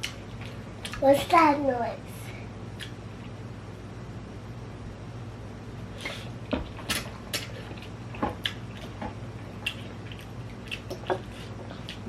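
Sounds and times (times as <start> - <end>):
person chewing and lip smacking: 0.0 - 1.0, 2.8 - 3.4, 6.5 - 12.0.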